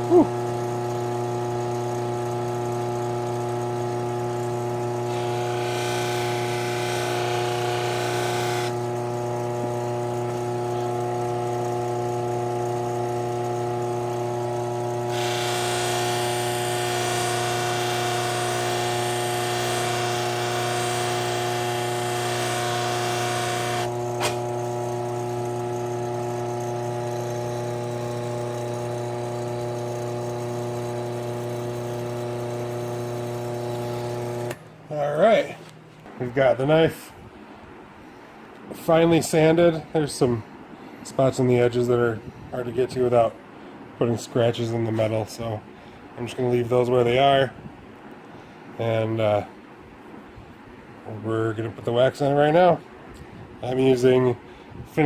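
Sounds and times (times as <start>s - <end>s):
electric motor hum: 0.0s - 35.5s.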